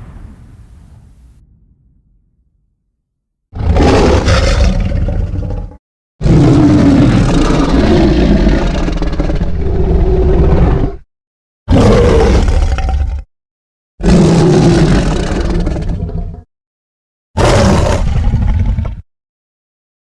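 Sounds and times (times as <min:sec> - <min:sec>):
monster roaring: 0:03.6 - 0:10.5.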